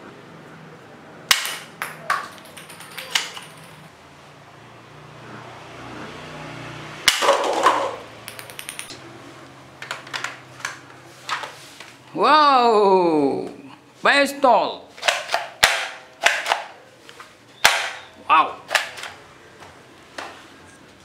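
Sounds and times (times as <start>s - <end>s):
toy guns clicking: 1.3s - 3.7s, 15.0s - 16.8s.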